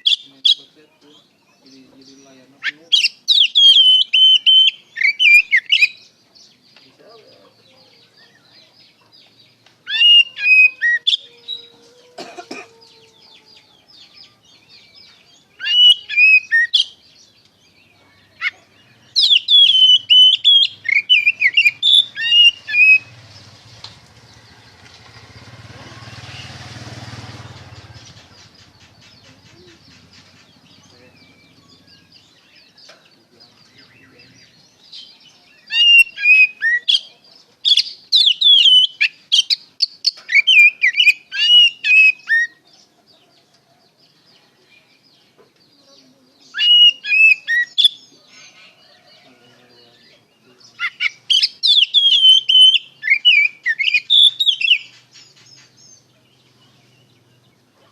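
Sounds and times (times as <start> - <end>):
bird whistling song: 1.6 - 6.2, 9.8 - 11.8, 13.2 - 23.2, 33.8 - 37.1, 37.7 - 42.6, 46.5 - 49.0, 50.7 - 57.5.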